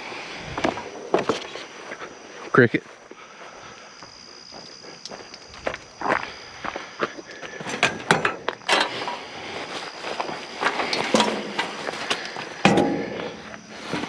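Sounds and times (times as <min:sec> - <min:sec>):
scrap clattering and knocking: 0:07.6 - 0:09.3, 0:10.2 - 0:14.0.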